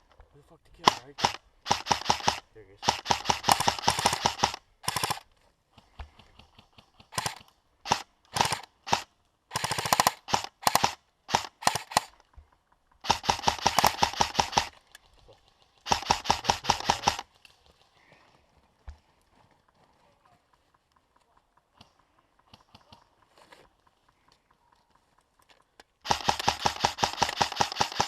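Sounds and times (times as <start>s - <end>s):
airsoft guns firing bursts: 0.8s - 5.3s, 6.1s - 12.2s, 13.0s - 14.8s, 15.5s - 17.3s, 26.0s - 28.0s.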